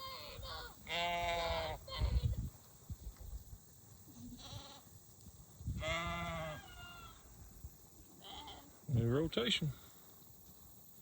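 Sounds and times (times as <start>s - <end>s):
sheep bleating: 0.0s - 1.8s, 5.8s - 7.2s, 8.2s - 8.7s.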